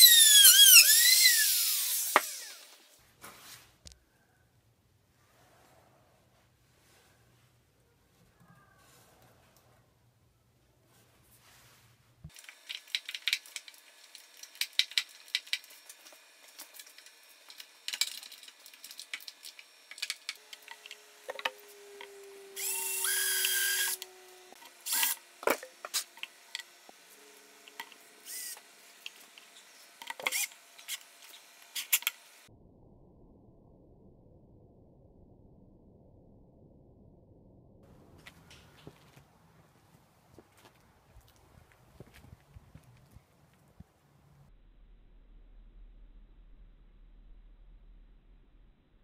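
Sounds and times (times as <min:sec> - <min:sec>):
power tool running: 0:00.0 - 0:02.8, 0:19.3 - 0:32.5
tools and wood knocking: 0:17.9 - 0:22.2.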